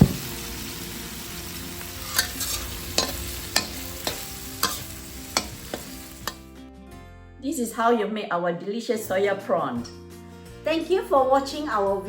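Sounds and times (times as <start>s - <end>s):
prawns sizzling in a wok: 0.0s - 6.6s
spatula knocking against wok: 2.1s - 6.4s.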